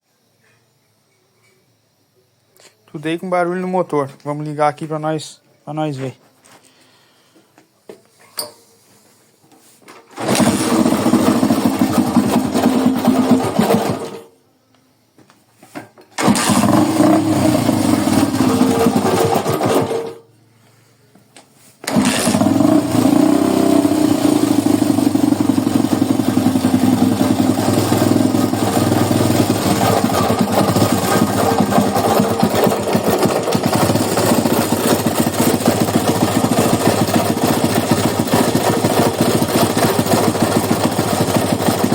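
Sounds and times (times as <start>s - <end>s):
motorcycle engine running: 10.2s - 14.2s, 16.2s - 20.1s, 21.9s - 41.9s.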